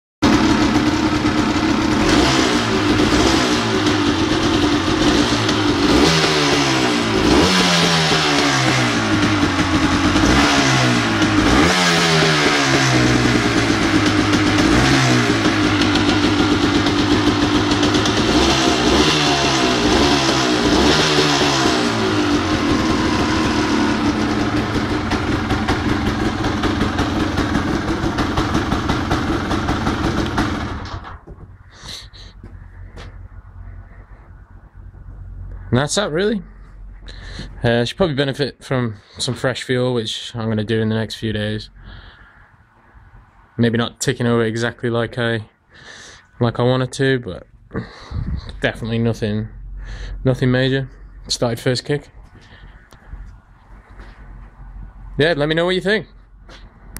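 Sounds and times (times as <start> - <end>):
two-stroke engine revving and idling: 0.2 - 37.6, 52.2 - 55.6.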